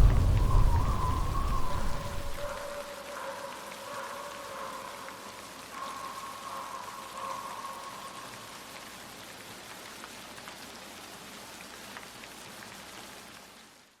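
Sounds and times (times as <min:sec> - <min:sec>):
raindrop ticks: 0:00.0 - 0:02.8
steady rain falling: 0:00.0 - 0:14.0.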